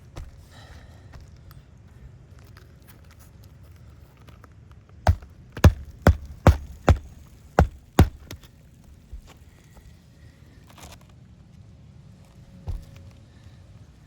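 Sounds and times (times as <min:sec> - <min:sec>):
hammer striking nails into shingles: 0:05.1 - 0:08.5.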